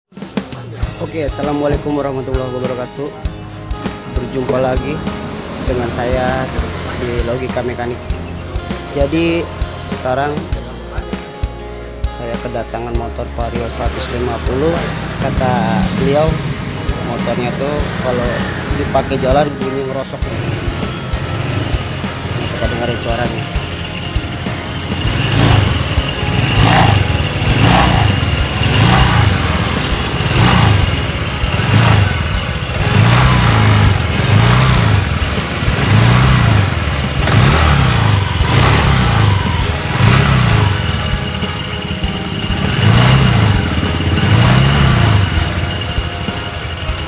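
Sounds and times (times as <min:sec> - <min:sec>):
scooter engine revving: 0:03.8 - 0:10.4, 0:13.6 - 0:47.0
rough grating rattle: 0:13.6 - 0:47.0.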